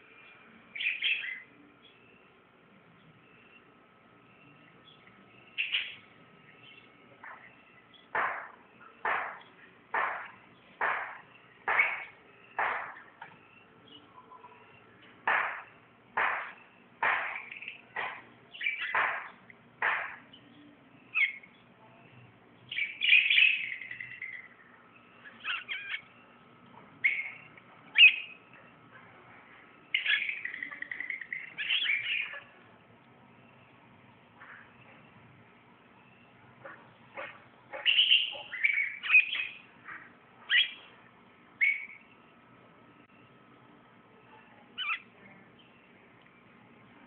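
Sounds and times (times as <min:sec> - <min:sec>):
lovebirds chirping and chattering: 0:00.0 - 0:47.0.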